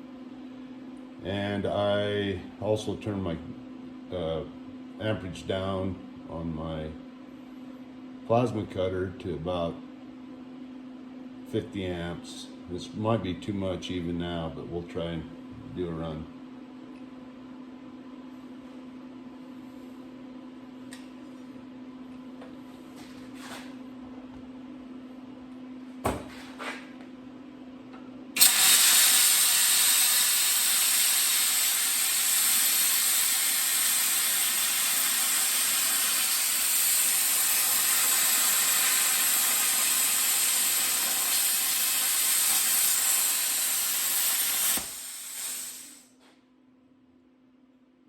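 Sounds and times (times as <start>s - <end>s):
steady hum: 0.0s - 46.1s
plasma cutter hissing: 28.4s - 46.0s.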